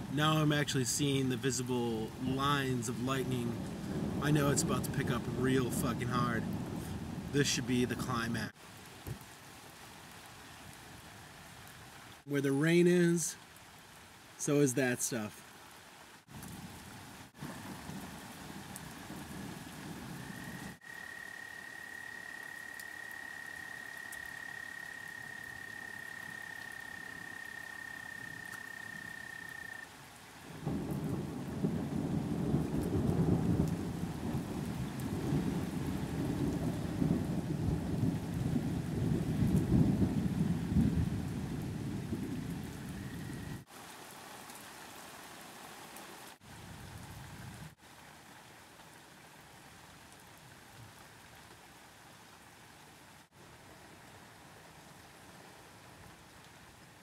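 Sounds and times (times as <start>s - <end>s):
steady rain falling: 0.0s - 57.0s
thunder rumbling: 2.1s - 8.5s, 30.6s - 43.6s.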